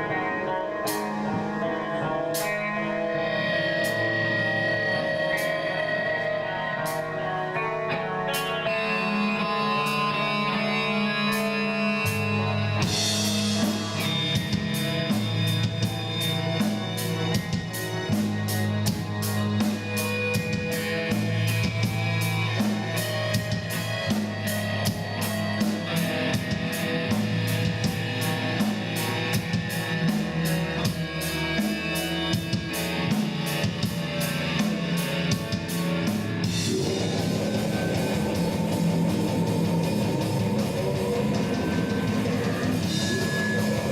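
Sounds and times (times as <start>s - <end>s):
bass line: 0.0s - 43.9s
rock guitar: 0.0s - 43.9s
drum kit fast beat: 12.8s - 43.9s.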